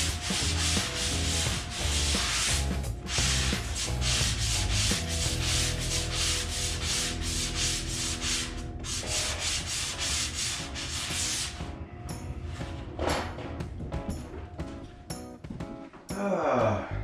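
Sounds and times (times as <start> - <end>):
hand sanding rasping strokes: 0.0 - 11.6.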